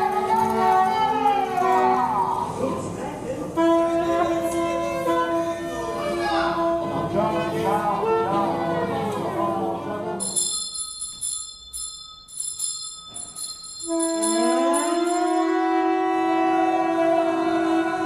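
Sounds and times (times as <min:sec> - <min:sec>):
bell-like ringing tones: 0:10.2 - 0:16.1
held reed instrument note: 0:13.8 - 0:17.9.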